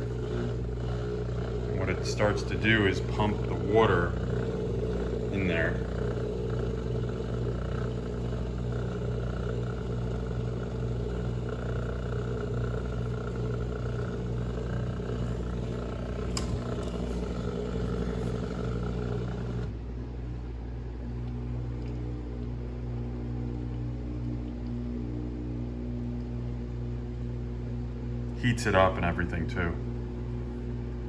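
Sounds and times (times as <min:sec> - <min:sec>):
dishwasher pump humming: 0:00.0 - 0:31.0
click: 0:16.3 - 0:17.0.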